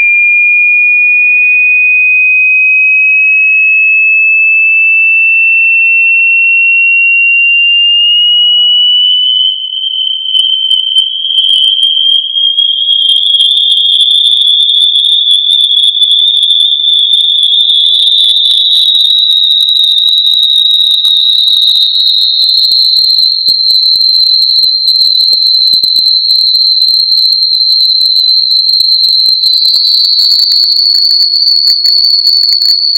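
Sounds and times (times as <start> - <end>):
rising sine tone: 0.0 - 4.8, 5.4 - 13.2.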